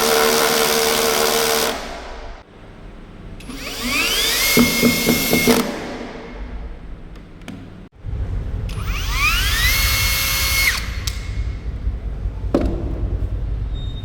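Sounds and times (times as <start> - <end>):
cordless drill whirring: 3.4 - 6.0, 8.8 - 11.2.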